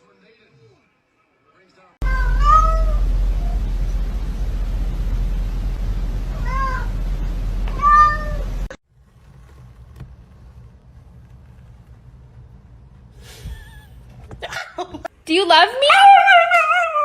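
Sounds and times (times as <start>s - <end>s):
cat meowing: 2.0s - 3.6s, 6.4s - 6.9s, 7.7s - 8.4s
loud low rumble: 2.0s - 8.8s
faint low hum: 2.0s - 14.3s.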